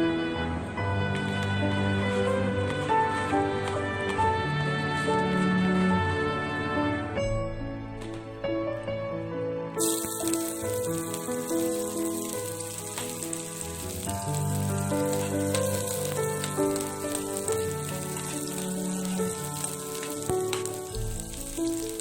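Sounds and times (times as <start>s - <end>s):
soft background music: 0.0s - 22.0s
food sizzling in a pan: 9.8s - 22.0s.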